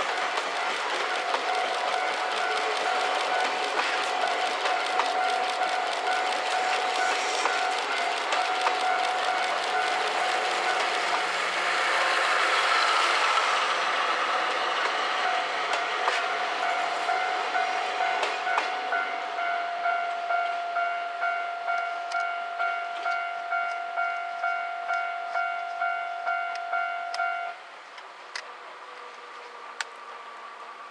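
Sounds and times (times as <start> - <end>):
train wheel clicks: 0.0 - 13.7
train rumbling past: 0.0 - 30.9.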